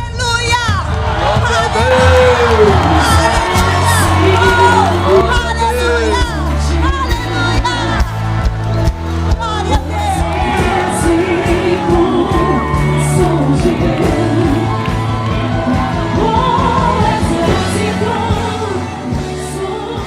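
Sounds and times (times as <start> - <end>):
worship music with beat and bass: 1.2 - 20.0
crowd singing along: 9.6 - 20.0
person singing: 9.8 - 20.0.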